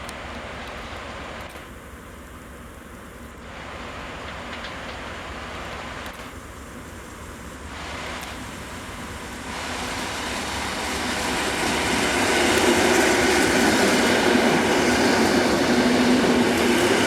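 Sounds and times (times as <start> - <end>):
train wheels rumbling on track: 3.4 - 17.0.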